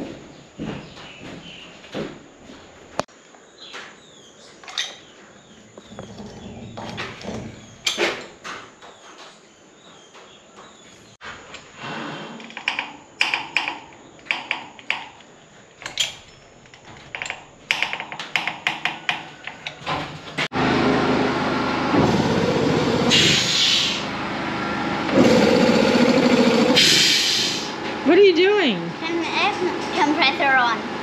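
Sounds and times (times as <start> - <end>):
irregular clicks and knocks: 12.4 - 20.5
air compressor throbbing: 20.5 - 29.2.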